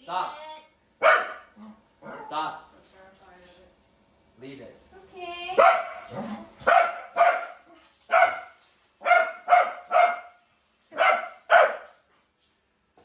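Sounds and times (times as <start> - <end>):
dog barking: 1.0 - 2.5, 5.6 - 12.0.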